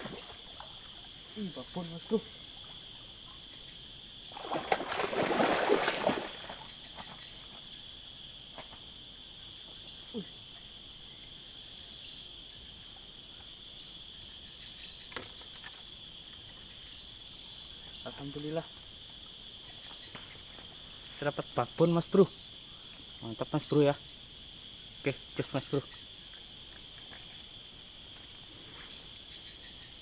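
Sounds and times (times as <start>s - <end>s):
insects droning: 0.0s - 30.0s.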